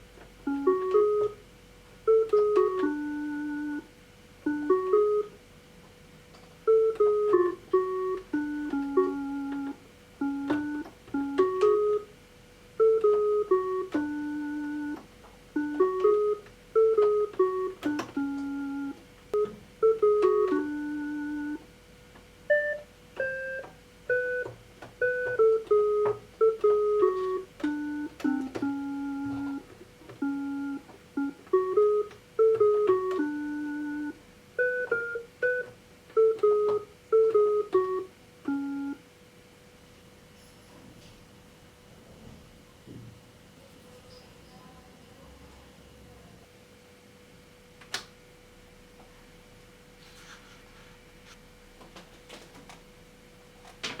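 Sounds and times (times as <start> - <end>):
electronic keyboard melody: 0.0 - 5.5, 6.5 - 21.8, 22.4 - 39.0
faint steady hum: 0.0 - 54.0.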